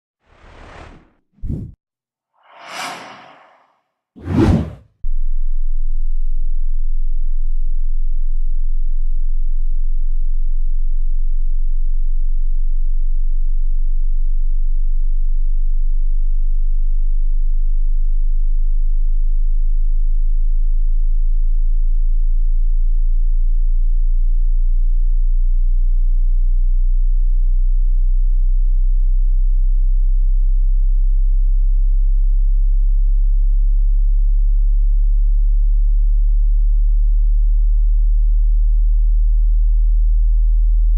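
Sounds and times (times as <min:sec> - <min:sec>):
low sine-wave test tone: 0:05.1 - 0:40.9.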